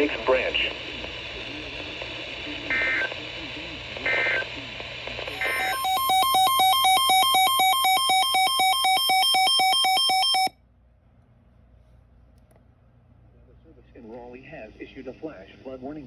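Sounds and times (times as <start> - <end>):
digital data bursts: 5.3 - 10.5.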